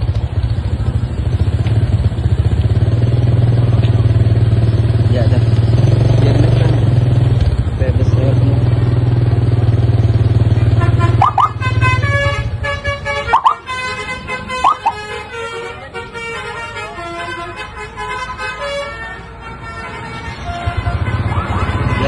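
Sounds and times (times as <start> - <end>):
bus engine rumbling: 0.0 - 22.0
musical bus horn tune: 10.6 - 22.0.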